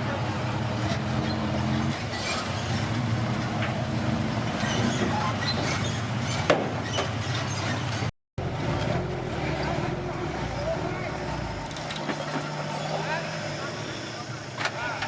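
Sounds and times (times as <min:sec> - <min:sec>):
bulldozer diesel engine running: 0:07.2 - 0:14.8.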